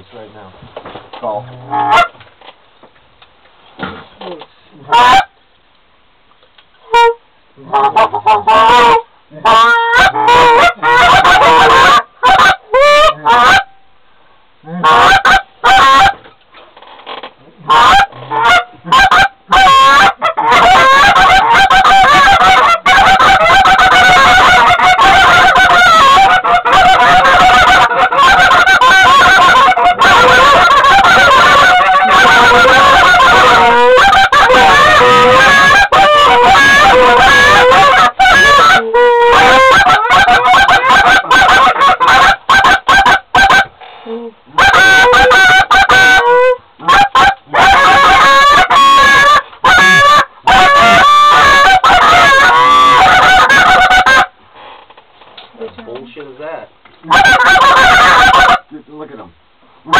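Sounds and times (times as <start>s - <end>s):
goose honking: 6.9s - 13.7s, 17.7s - 43.7s, 57.1s - 58.7s.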